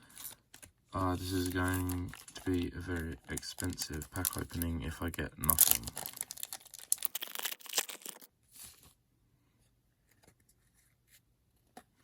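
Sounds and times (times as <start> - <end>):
foil pack tearing open: 1.1 - 8.3.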